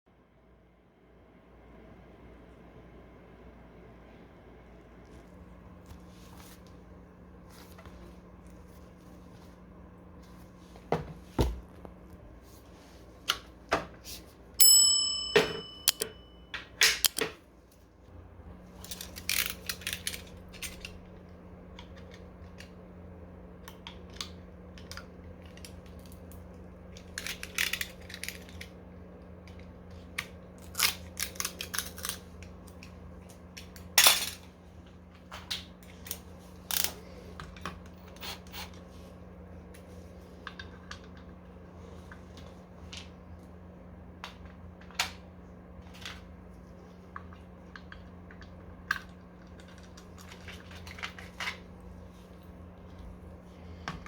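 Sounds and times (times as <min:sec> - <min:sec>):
steady electrical hum: 0:00.1 - 0:54.0
ringing metallic clink: 0:14.6 - 0:16.5
metal tools clicking and knocking: 0:15.3 - 0:16.2, 0:16.8 - 0:17.3.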